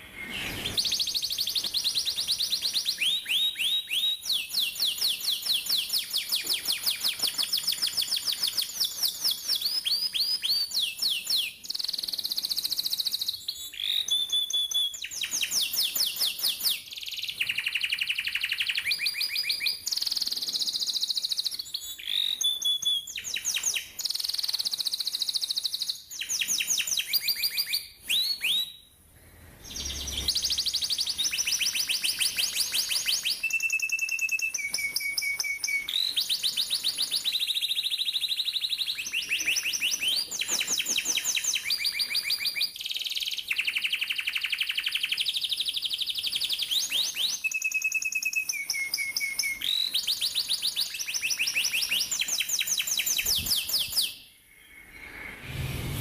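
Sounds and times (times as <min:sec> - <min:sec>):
canary singing: 0:00.0 - 0:28.9, 0:29.6 - 0:54.2.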